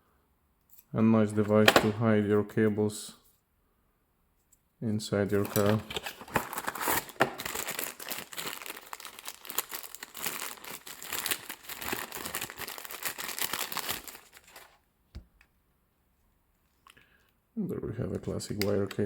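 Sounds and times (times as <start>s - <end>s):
packaging crinkling and rustling: 5.3s - 14.8s.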